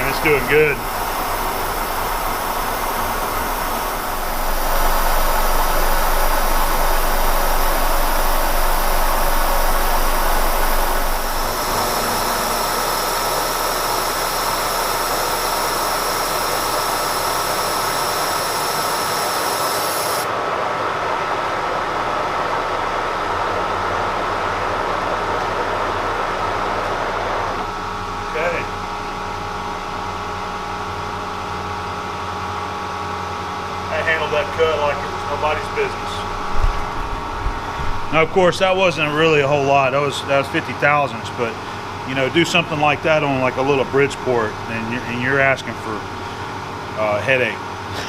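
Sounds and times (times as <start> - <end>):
milling machine cutting metal: 0.0 - 20.3.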